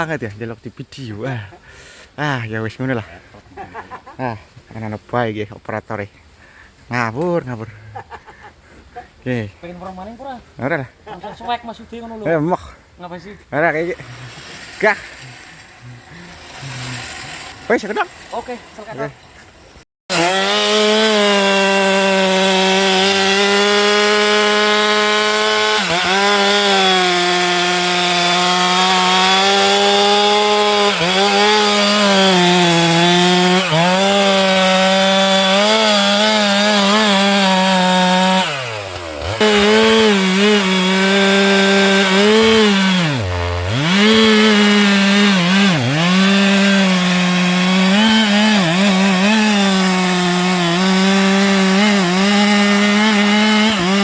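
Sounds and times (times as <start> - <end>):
chainsaw cutting through trunk: 13.8 - 54.0.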